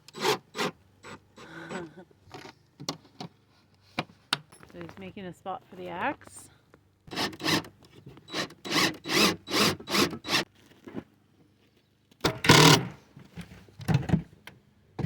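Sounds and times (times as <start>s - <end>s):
handsaw cutting wood: 7.1s - 7.7s, 8.3s - 10.4s.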